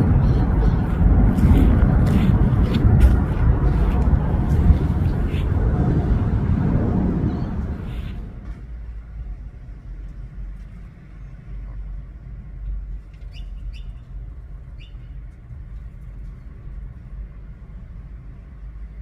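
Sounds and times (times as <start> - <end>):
steady low rumble: 0.0 - 19.0
small bird chirping: 13.2 - 14.1, 14.8 - 15.2.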